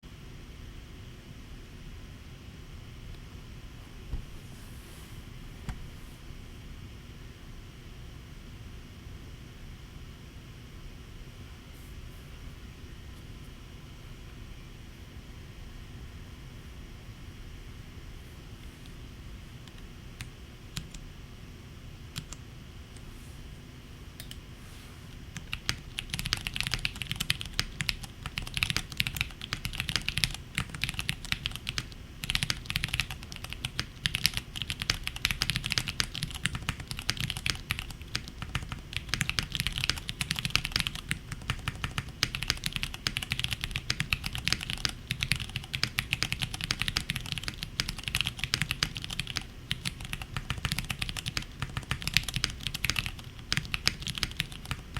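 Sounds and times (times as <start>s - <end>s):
mechanical keyboard typing: 22.2s - 22.4s, 25.4s - 54.9s.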